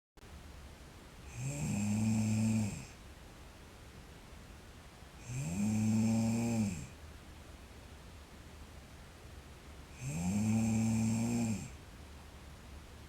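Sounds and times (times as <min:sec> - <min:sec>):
girl snoring: 0:01.3 - 0:03.0, 0:05.2 - 0:06.9, 0:10.0 - 0:11.8.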